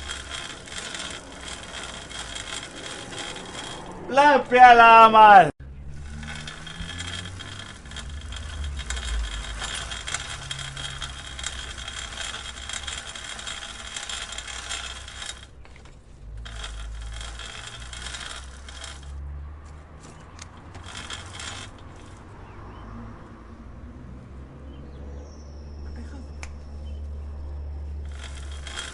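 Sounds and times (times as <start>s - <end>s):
bicycle chain clicking: 0.0s - 4.6s, 5.7s - 22.5s, 27.9s - 28.9s.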